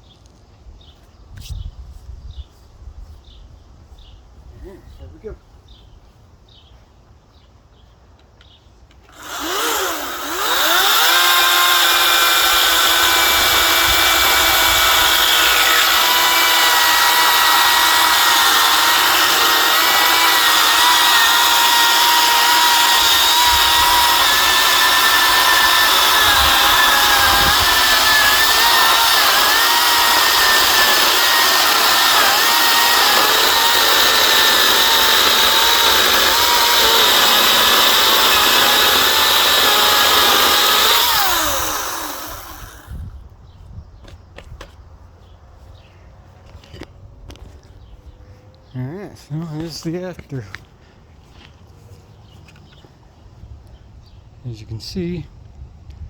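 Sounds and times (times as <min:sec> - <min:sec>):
electric chainsaw whining: 0:09.1 - 0:43.2.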